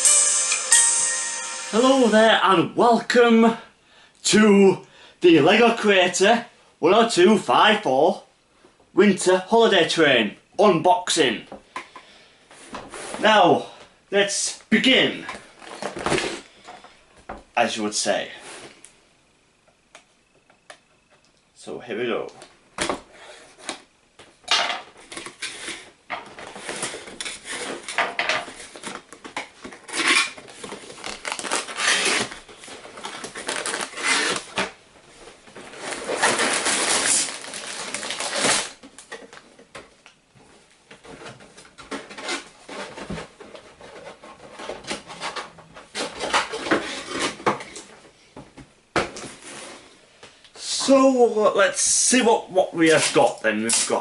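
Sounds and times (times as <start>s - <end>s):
plastic bags rustling: 26.2s - 39.6s.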